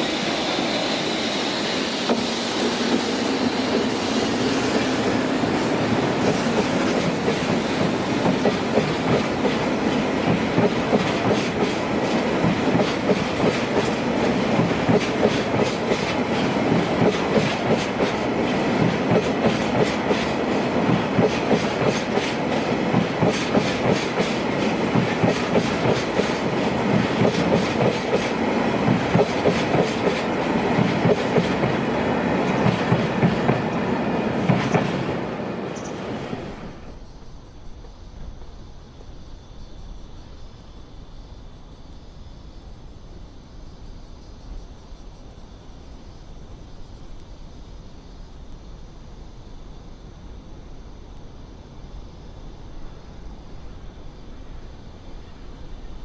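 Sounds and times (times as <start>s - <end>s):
freight train wagons rolling: 2.0s - 37.0s.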